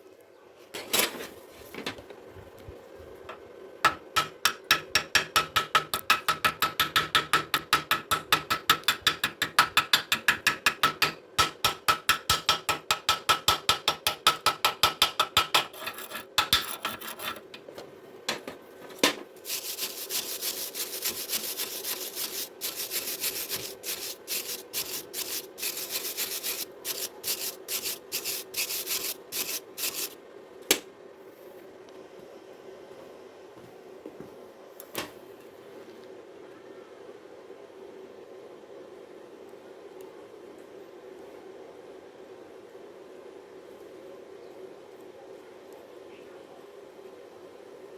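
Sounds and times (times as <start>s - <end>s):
hissing metal scrape: 19.4s - 30.2s.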